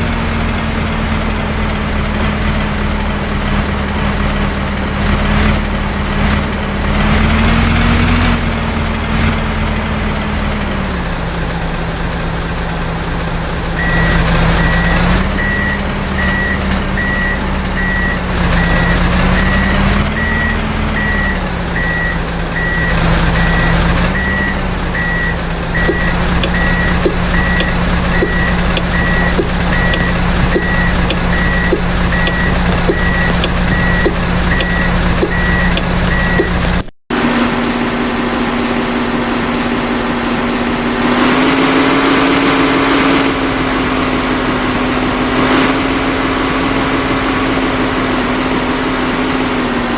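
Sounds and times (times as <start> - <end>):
heavy diesel engine revving: 0.0 - 49.9
reversing alarm beeping: 13.8 - 36.9.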